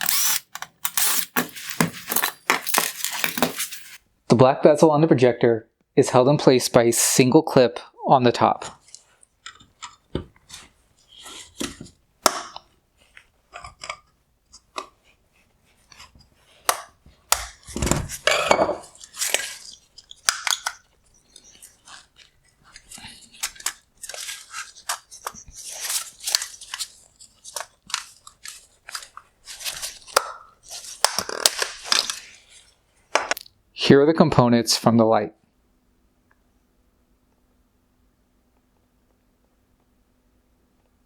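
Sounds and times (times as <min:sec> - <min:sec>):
hard plastic parts clicking: 0:00.0 - 0:04.0.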